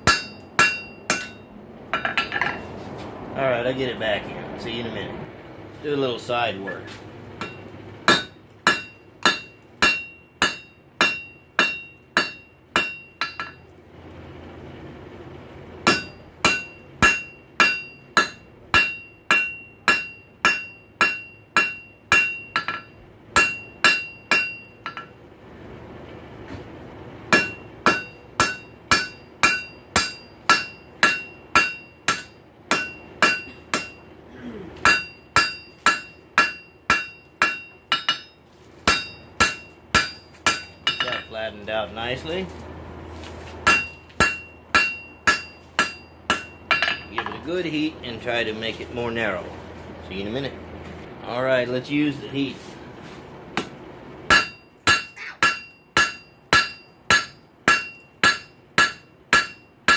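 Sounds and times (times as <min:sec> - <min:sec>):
hammer ringing on anvil: 0:00.0 - 0:02.6, 0:07.4 - 0:13.6, 0:15.8 - 0:25.2, 0:27.3 - 0:34.1, 0:34.8 - 0:41.4, 0:43.6 - 0:47.4, 0:54.3 - 0:59.9.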